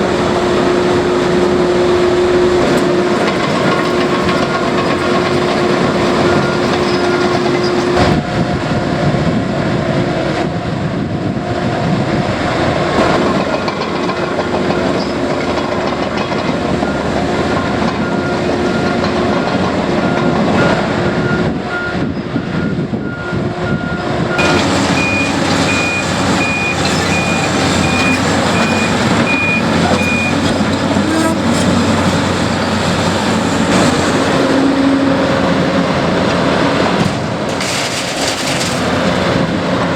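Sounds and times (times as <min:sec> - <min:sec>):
heavy machine diesel engines: 0:00.0 - 0:39.9
high-pitched backup alarm beeping: 0:20.1 - 0:30.5
low-pitched backup alarm beeping: 0:20.1 - 0:30.5.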